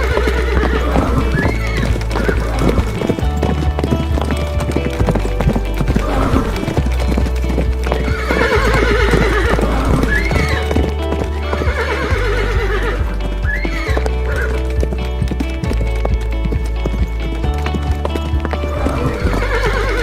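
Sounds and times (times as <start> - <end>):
horse whinny: 0.0 - 5.0, 5.8 - 7.0, 7.6 - 14.9, 18.5 - 20.0
horse neighing: 0.0 - 15.1, 18.3 - 20.0
background music with bass: 0.0 - 20.0
galloping hoofbeats: 0.0 - 20.0.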